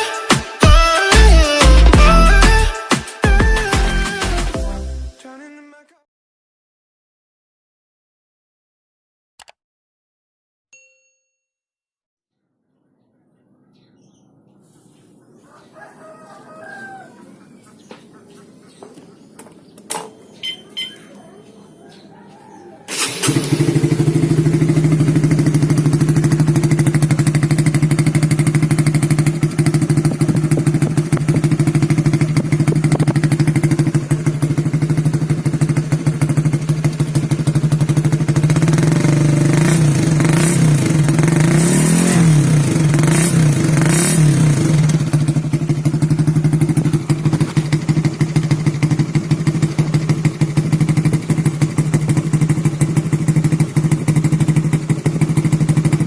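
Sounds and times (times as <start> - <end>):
engine revving: 22.9 - 56.0
motorcycle engine idling: 22.9 - 56.0.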